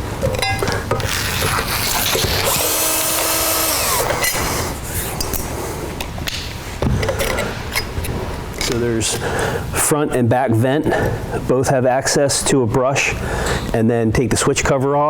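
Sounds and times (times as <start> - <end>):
cordless drill whine: 1.2 - 4.8.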